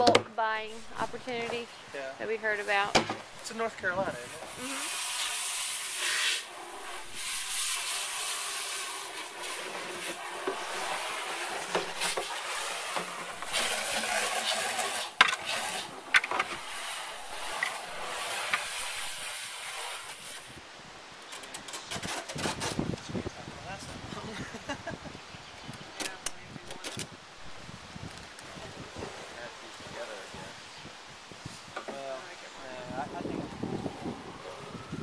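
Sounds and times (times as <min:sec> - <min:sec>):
hissing rubbing noise: 0:00.6 - 0:20.6
sharp knocks: 0:02.9 - 0:03.3.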